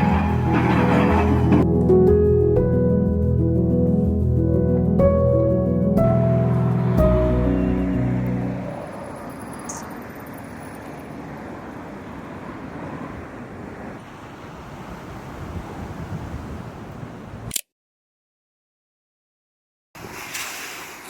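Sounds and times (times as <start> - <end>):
surf rushing on beach: 12.4 - 17.4.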